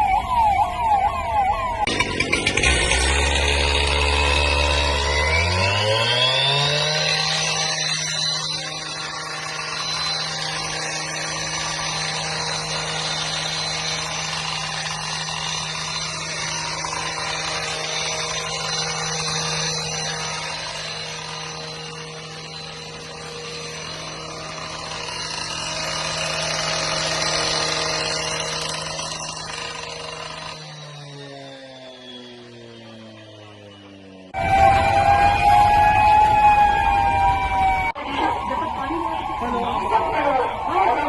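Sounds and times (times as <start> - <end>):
power tool motor running: 1.9 - 34.3.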